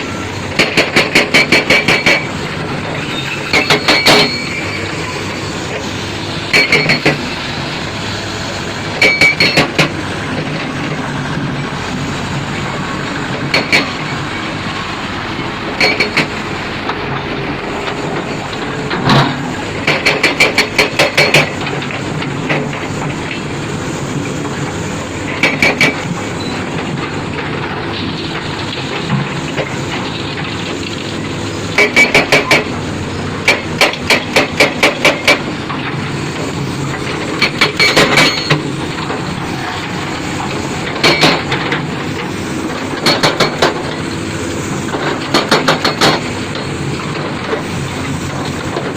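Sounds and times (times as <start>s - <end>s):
construction machine engine drone: 0.0s - 48.9s
loud metallic clanks: 3.3s - 4.6s, 6.5s - 7.3s, 36.9s - 44.0s.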